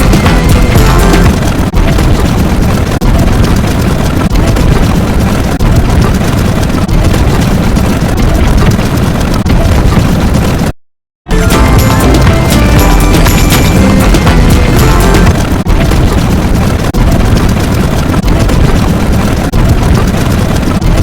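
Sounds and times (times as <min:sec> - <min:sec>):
distorted bass-heavy roar: 0:00.0 - 0:03.7, 0:11.3 - 0:21.0.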